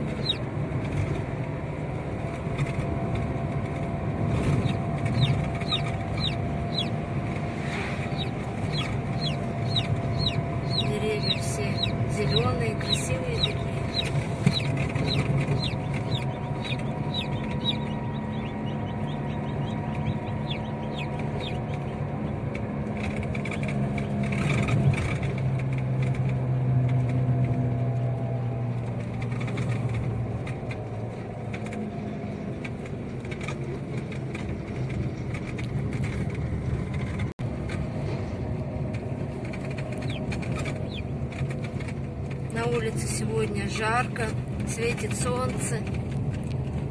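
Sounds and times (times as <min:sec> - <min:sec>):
car engine and road noise: 0:00.0 - 0:46.9
chicks cheeping: 0:00.2 - 0:00.4, 0:04.6 - 0:07.0, 0:08.0 - 0:22.4, 0:39.9 - 0:41.1.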